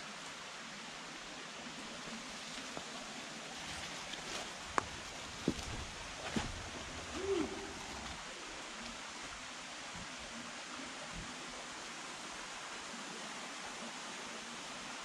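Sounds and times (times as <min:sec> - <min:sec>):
waterfall rushing: 0:06.8 - 0:09.9.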